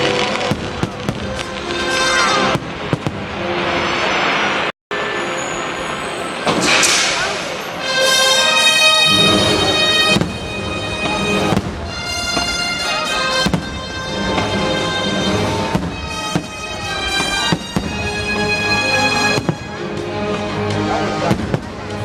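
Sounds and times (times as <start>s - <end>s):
music with long held chords: 0.0s - 4.4s, 7.8s - 22.0s
sharp firework bangs: 0.3s - 3.4s, 9.2s - 20.0s, 21.2s - 21.9s.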